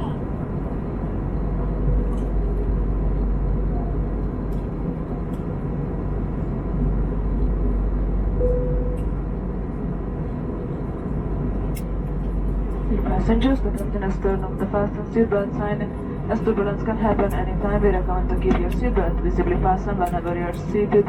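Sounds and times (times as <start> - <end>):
aircraft cabin engine rumble: 0.0 - 21.0.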